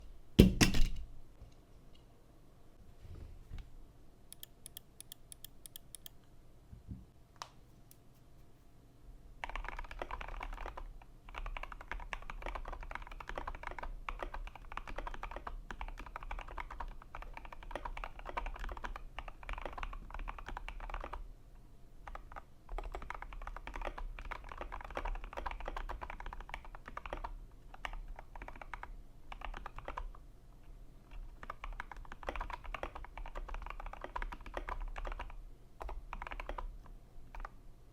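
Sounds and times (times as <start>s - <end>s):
mechanical keyboard typing: 9.4s - 21.2s, 22.1s - 30.2s, 31.1s - 36.7s, 37.3s - 37.6s.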